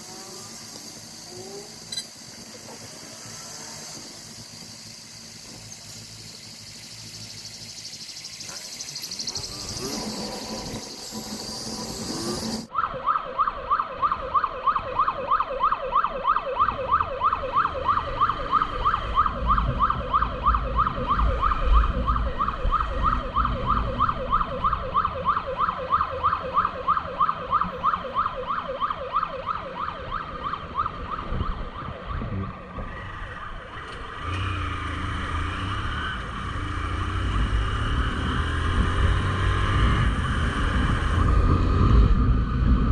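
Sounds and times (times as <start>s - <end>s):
siren yelping: 8.5s - 32.4s.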